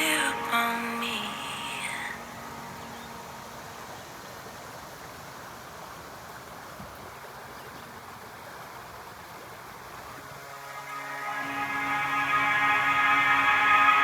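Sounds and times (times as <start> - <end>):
creek water flowing: 0.0 - 14.0.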